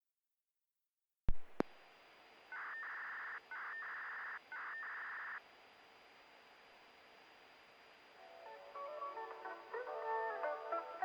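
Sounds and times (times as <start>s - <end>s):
radio signal click: 1.3s - 1.8s
faint radio hiss: 1.3s - 11.0s.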